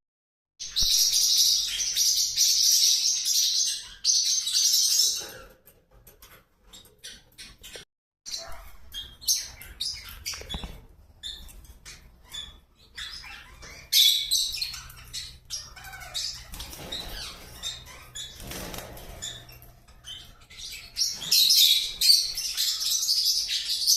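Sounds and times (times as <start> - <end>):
parrots chirping: 0.6 - 5.6, 6.6 - 23.9
wings flapping: 16.5 - 17.6, 18.4 - 19.6.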